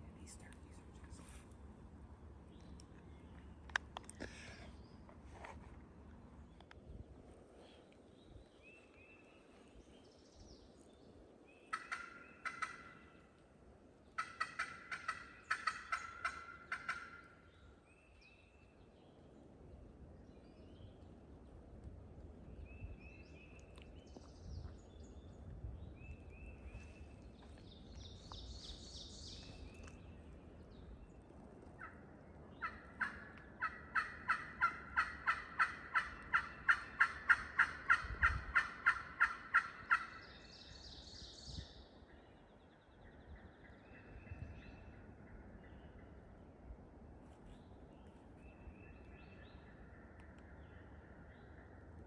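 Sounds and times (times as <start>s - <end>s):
turkey yelps: 32.6s - 40.2s.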